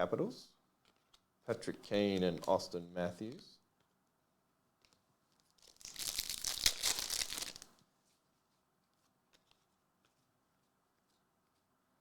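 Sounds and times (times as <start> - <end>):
card pack wrapper tearing: 4.9 - 7.7.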